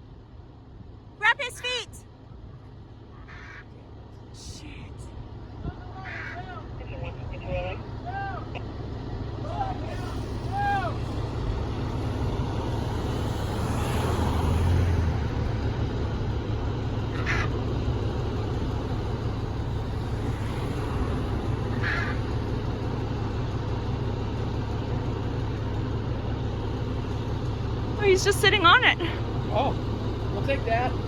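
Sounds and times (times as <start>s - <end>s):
fire truck engine rumbling: 0.0s - 31.0s
macaw squawking: 3.2s - 3.7s, 17.1s - 17.6s, 21.7s - 22.3s.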